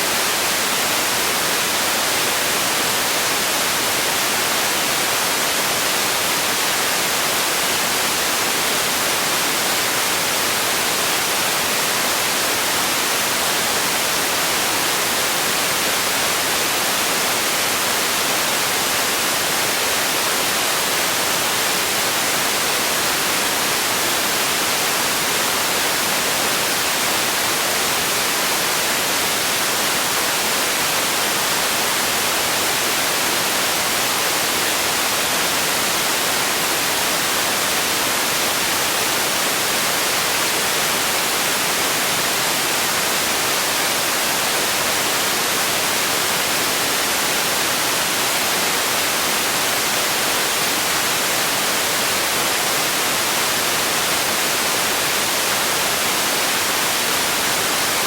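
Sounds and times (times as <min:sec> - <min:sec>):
white noise hiss: 0:00.0 - 0:58.0.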